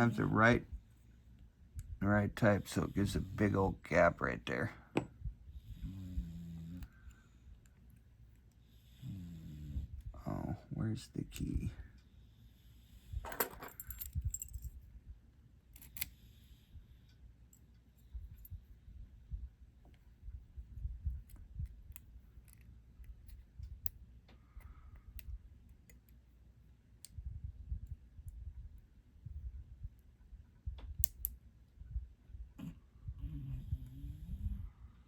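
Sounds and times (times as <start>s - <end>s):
small metallic clicks: 15.7s - 16.2s.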